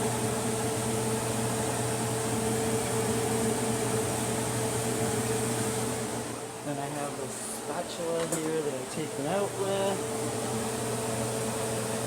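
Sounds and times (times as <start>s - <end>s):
steady machine hum: 6.1s - 12.0s.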